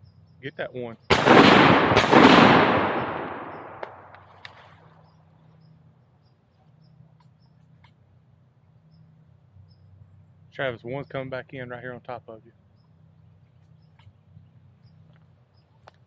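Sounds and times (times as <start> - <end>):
shotgun blast echo: 1.1 - 4.2.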